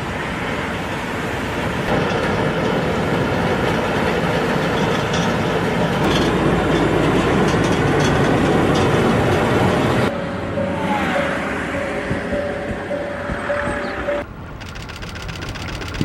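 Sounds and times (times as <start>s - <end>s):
train rumbling: 0.0s - 16.0s
wheels clicking on rails: 1.9s - 11.1s, 11.7s - 16.0s.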